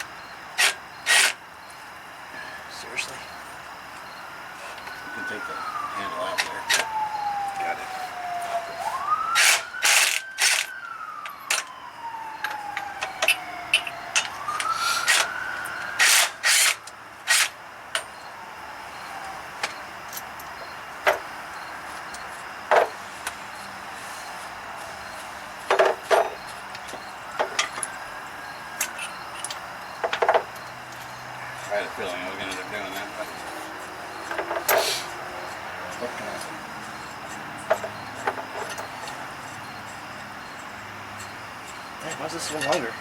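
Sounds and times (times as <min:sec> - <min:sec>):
metal tools clanking: 0:28.8 - 0:43.0.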